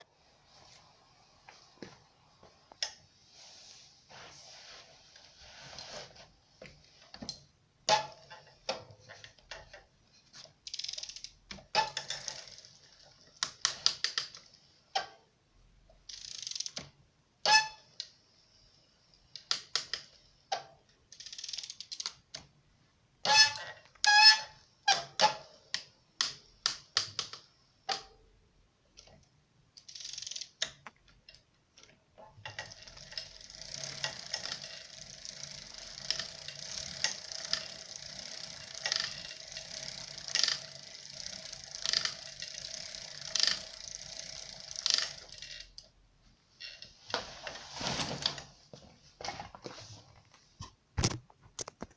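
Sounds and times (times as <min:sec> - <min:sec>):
bicycle motor crackling clicks: 0:07.3 - 0:15.1, 0:16.1 - 0:18.2, 0:19.3 - 0:22.5, 0:23.2 - 0:28.2, 0:29.8 - 0:45.9.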